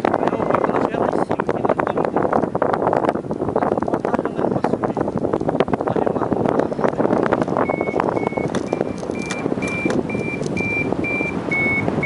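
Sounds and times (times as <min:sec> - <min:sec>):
wind on microphone: 0:00.0 - 0:12.0
variometer beeping: 0:07.6 - 0:12.0.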